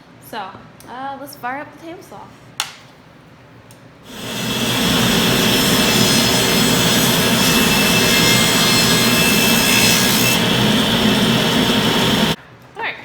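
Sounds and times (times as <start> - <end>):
table saw cutting board: 4.1 - 12.4.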